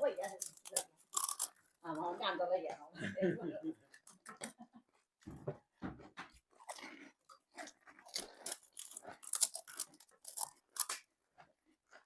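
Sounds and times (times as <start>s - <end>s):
crisp shells crunching: 0.0s - 1.6s, 6.6s - 11.1s.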